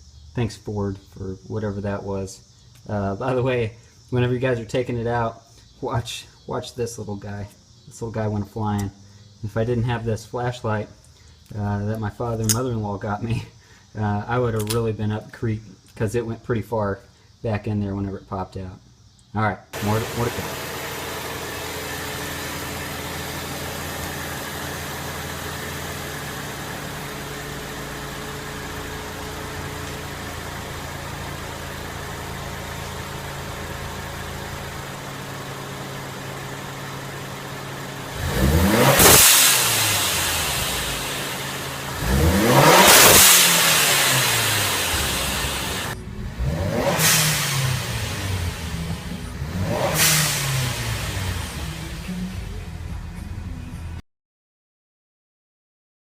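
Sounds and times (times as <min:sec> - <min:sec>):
car engine idling and revving: 0:19.8 - 0:54.0.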